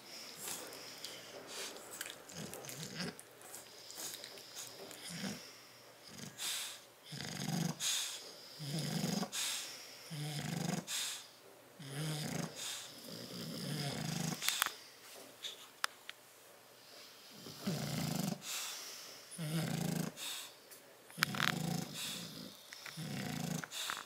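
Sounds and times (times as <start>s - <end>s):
dog snoring: 2.3s - 3.2s, 3.9s - 9.4s, 10.1s - 11.2s, 11.8s - 14.5s, 17.3s - 18.6s, 19.3s - 20.5s, 21.2s - 24.0s.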